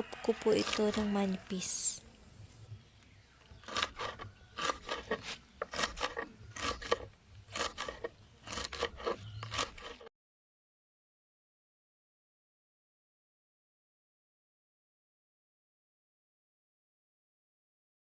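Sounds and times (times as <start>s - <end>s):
blade slicing stems: 3.6s - 10.1s.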